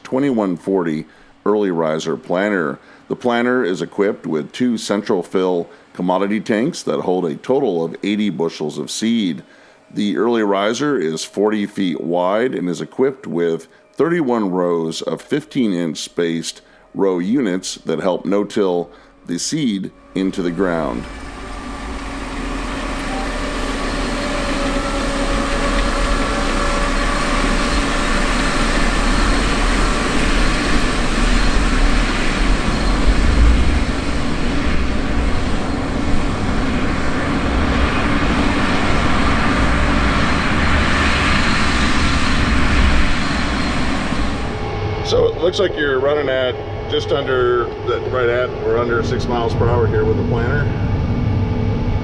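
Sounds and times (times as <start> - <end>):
tractor diesel engine rumbling: 18.8 - 44.6.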